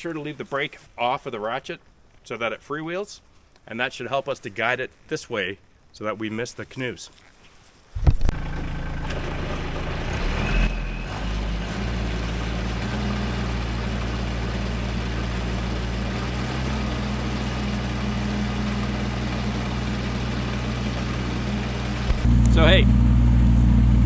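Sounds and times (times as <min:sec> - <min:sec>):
tractor diesel engine idling: 0:08.3 - 0:22.3.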